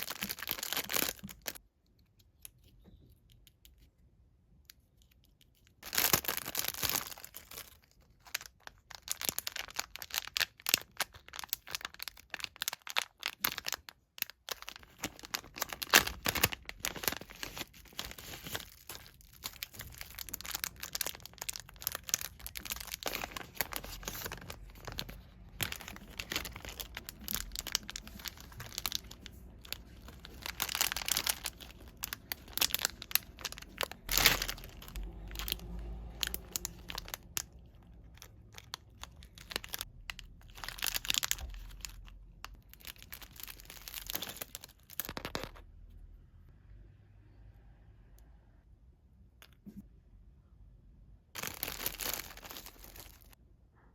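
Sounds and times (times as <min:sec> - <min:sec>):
plastic packaging crinkling and tearing: 0:00.0 - 0:02.7, 0:04.8 - 0:45.7, 0:51.4 - 0:53.4.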